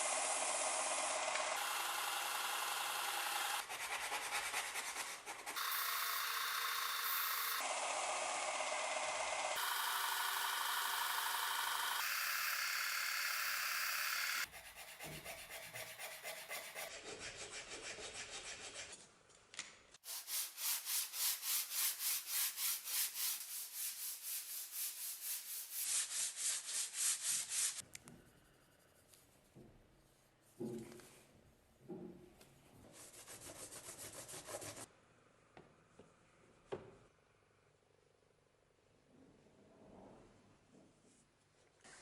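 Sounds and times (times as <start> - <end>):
sandpaper rubbing on wood: 3.6 - 5.6, 14.4 - 19.0, 20.0 - 27.8, 33.0 - 34.9.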